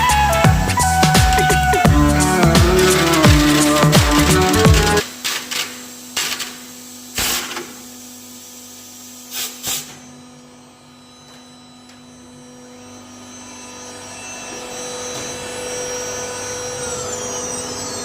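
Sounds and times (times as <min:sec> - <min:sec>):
router electric hum: 0:00.0 - 0:18.0
short bursts of machine noise: 0:01.2 - 0:07.8.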